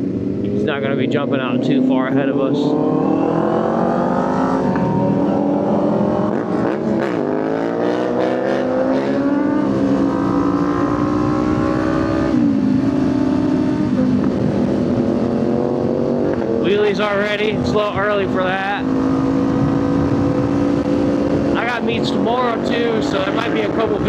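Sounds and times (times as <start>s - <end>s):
motorcycle engine accelerating: 0.0s - 24.0s
wind noise on microphone: 9.4s - 24.0s.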